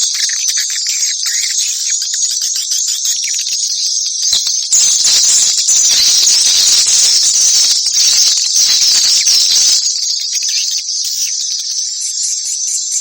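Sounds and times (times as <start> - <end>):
swiftlets twittering: 4.4 - 10.5.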